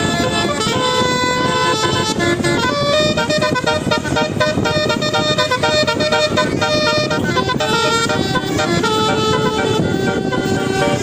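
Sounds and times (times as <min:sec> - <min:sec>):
bus musical horn tune: 0:00.0 - 0:11.0
continuous noisy background: 0:00.0 - 0:11.0.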